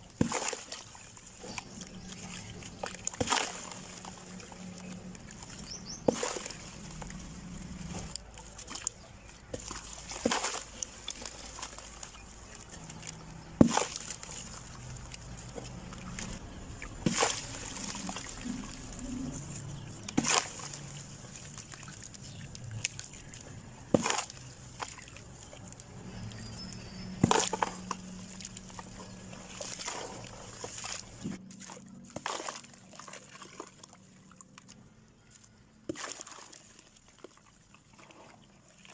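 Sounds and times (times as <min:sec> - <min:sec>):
sand cement crumbling: 0:05.0 - 0:22.4, 0:23.1 - 0:25.6.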